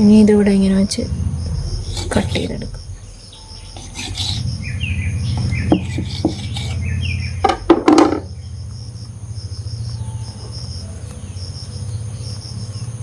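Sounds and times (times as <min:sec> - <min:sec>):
crickets chirring: 0:00.0 - 0:13.0
low steady hum: 0:00.0 - 0:13.0
bird chirps: 0:01.4 - 0:09.0
sharp knocks: 0:05.4 - 0:06.8, 0:07.4 - 0:08.3.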